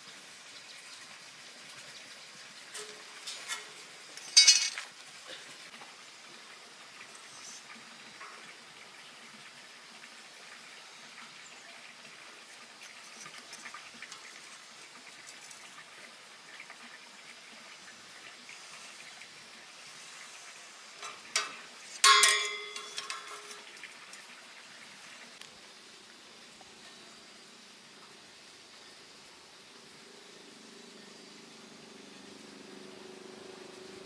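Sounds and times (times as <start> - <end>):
faint crackling hiss: 1.7 - 11.7, 18.2 - 33.2
iron bars clanking: 4.3 - 4.8, 21.0 - 23.9.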